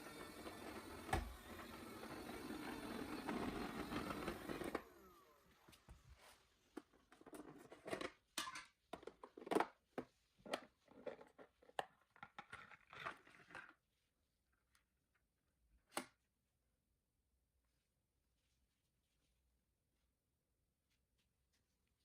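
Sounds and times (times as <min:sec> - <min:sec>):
robot vacuum cleaner whirring: 0:00.0 - 0:05.8.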